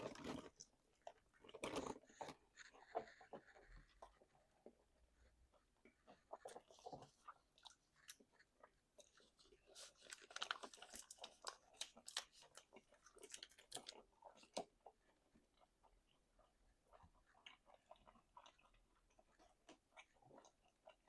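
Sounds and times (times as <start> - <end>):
chewing crunches: 6.0 - 21.0.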